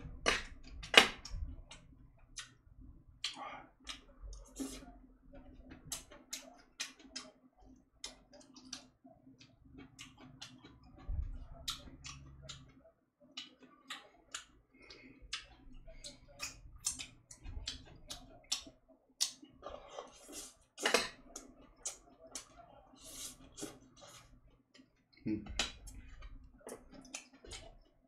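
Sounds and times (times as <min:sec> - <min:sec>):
chewing and mouth smacks: 0:08.0 - 0:12.8, 0:13.4 - 0:22.6, 0:25.5 - 0:27.8.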